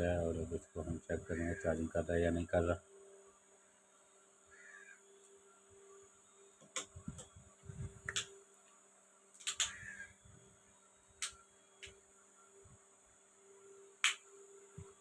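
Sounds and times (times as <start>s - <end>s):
faint steady hum: 0.0s - 15.0s
plastic clicks and taps: 9.4s - 9.8s.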